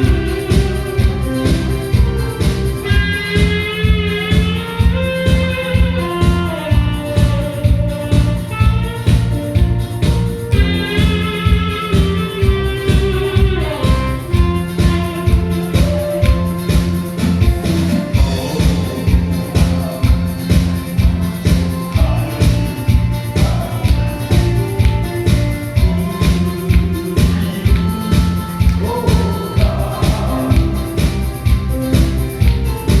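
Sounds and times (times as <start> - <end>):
guitar melody: 0.0 - 33.0
steady drum beat: 0.0 - 33.0.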